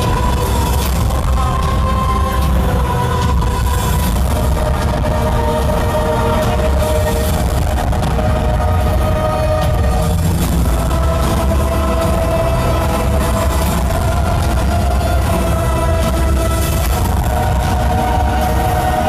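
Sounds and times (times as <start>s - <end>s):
hardstyle music over sound system: 0.0s - 19.0s.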